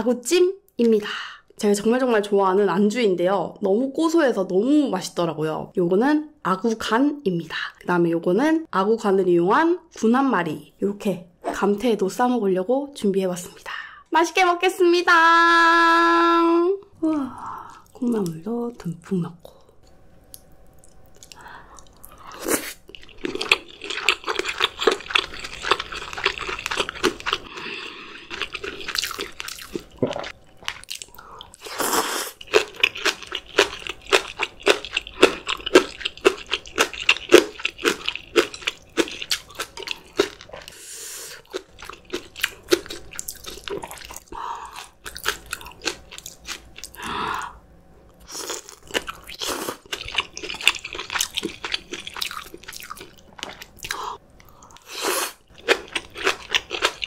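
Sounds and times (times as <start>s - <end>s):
crisp chewing crunches: 22.9s - 40.8s, 48.3s - 54.6s, 55.5s - 57.0s.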